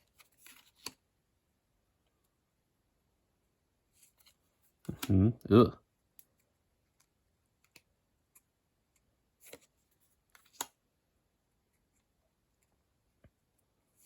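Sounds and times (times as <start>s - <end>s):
trading cards rustling and clicking: 0.0s - 1.0s, 9.4s - 10.8s.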